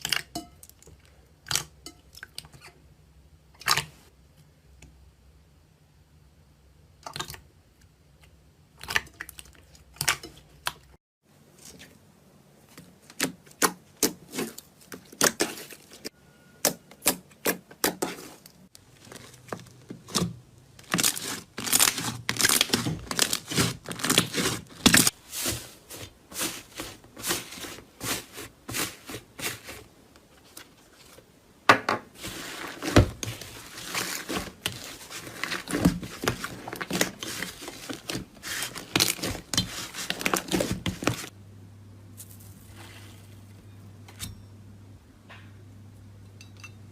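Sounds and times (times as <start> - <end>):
hands squishing slime: 16.7 - 29.8, 32.2 - 41.3.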